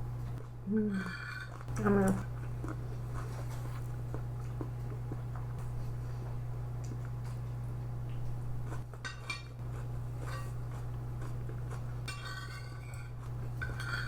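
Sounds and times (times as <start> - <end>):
steady low hum: 0.0 - 14.0
cutlery clinking on plate: 12.1 - 14.0.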